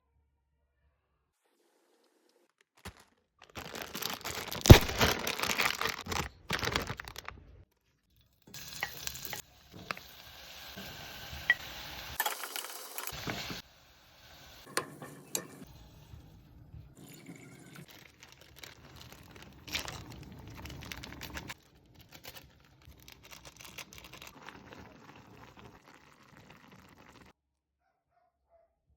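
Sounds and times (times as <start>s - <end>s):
packet tearing and crinkling: 2.8s - 7.5s, 17.9s - 24.8s
cooking in a pot: 7.6s - 27.4s.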